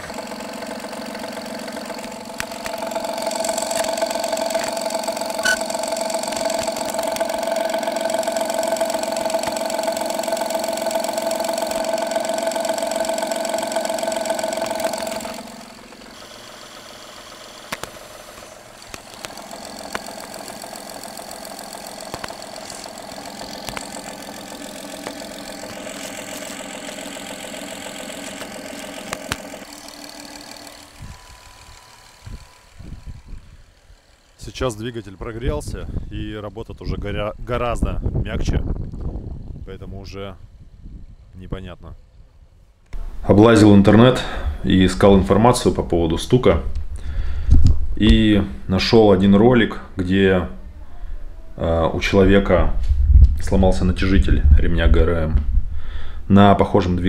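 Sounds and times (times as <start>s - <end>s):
car engine idling: 0.0s - 37.8s
engine ticking: 0.0s - 40.6s.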